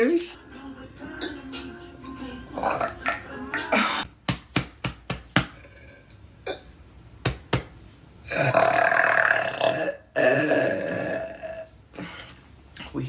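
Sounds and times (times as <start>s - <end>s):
woman burping: 2.6s - 4.0s, 5.6s - 6.7s, 8.3s - 11.7s.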